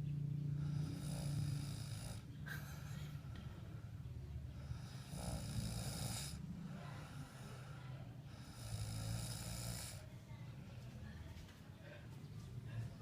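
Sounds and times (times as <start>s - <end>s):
quiet snoring: 0.4s - 2.7s, 4.5s - 10.1s.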